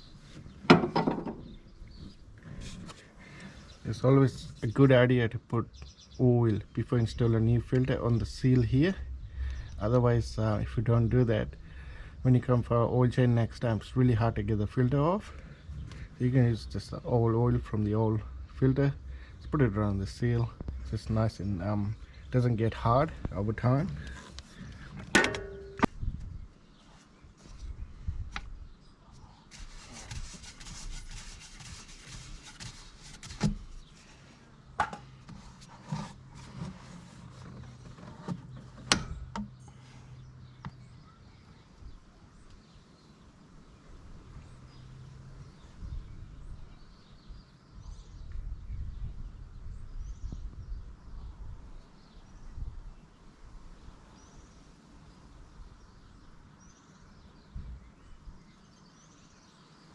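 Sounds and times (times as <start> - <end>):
birds chirping faintly: 0.0 - 59.9
sharp clicks and knocks: 25.0 - 25.9
handling rubbing: 29.5 - 39.2.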